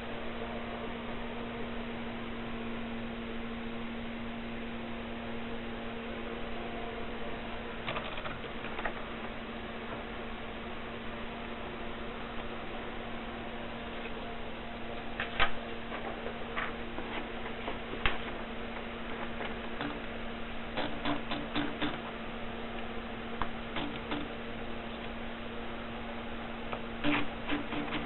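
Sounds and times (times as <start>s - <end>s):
electrical hum: 0.0s - 28.0s.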